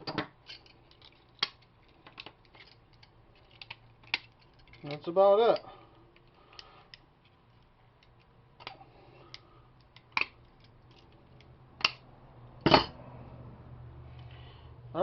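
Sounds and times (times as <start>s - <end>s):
low steady hum: 0.0s - 15.0s
metal screws clinking: 0.4s - 5.7s.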